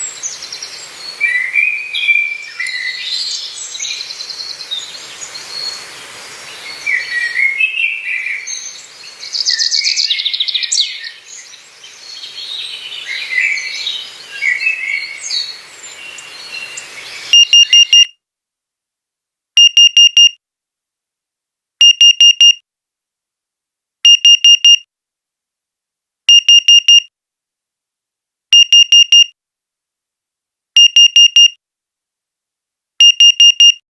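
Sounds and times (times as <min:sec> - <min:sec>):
digital alarm clock beeping: 0:17.3 - 0:18.1, 0:19.6 - 0:20.4, 0:21.8 - 0:22.6, 0:24.1 - 0:24.8, 0:26.3 - 0:27.1, 0:28.6 - 0:29.3, 0:30.8 - 0:31.6, 0:33.0 - 0:33.8.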